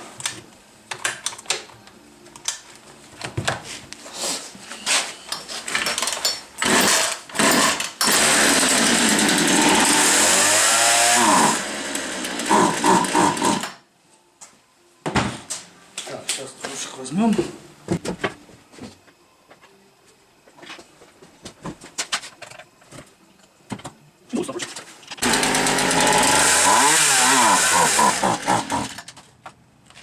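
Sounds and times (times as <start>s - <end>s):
chainsaw engine running: 6.6s - 13.8s, 25.2s - 29.1s.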